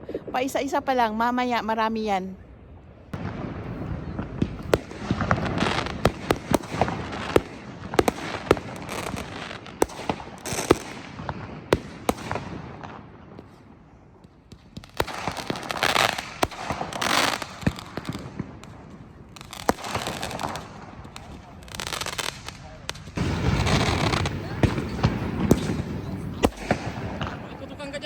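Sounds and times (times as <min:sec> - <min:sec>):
fireworks bangs and pops: 0:03.1 - 0:28.0
fireworks hissing and crackling: 0:03.1 - 0:28.0.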